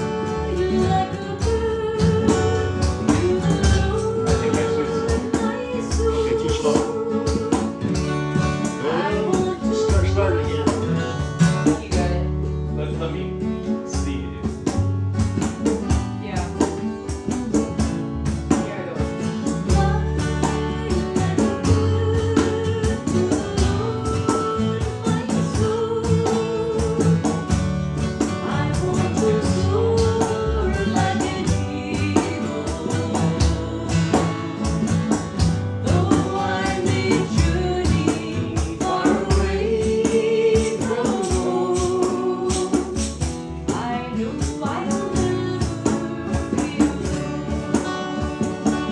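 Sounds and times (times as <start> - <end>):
people singing: 0.0 - 12.3, 18.5 - 48.9
mandolin: 0.0 - 48.9
strummed acoustic guitar: 0.0 - 48.9.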